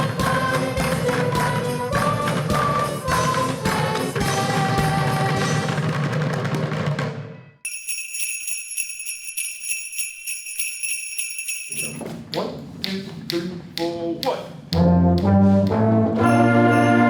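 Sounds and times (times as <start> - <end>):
sleigh bells jingling: 7.6 - 12.2, 16.2 - 17.0
brass band playing: 14.8 - 17.0.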